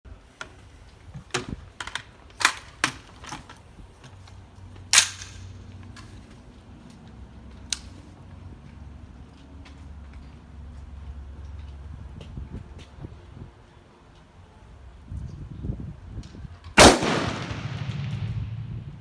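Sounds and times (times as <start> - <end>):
rifle metallic clicks and snaps: 1.8 - 3.6, 4.9 - 6.1, 7.6 - 8.0.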